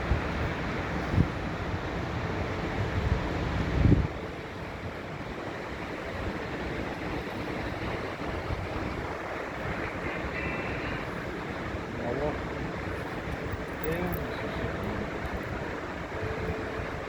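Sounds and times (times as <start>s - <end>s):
river water rushing: 0.0s - 17.0s
wind buffeting microphone: 0.0s - 17.0s.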